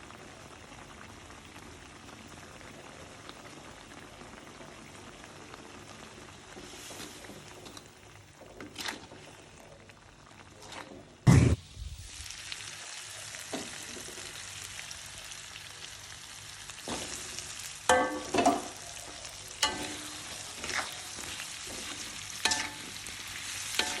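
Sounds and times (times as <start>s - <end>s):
food sizzling in hot oil: 3.3s - 7.8s, 10.3s - 24.0s
utensil clinking against pan: 17.9s - 18.8s, 22.5s - 23.0s.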